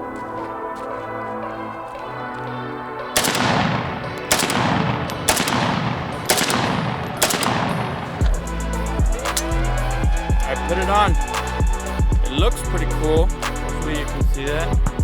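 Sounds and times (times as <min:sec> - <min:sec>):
background music with steady beat: 0:00.0 - 0:15.0
rifle shots with echo: 0:03.2 - 0:08.4.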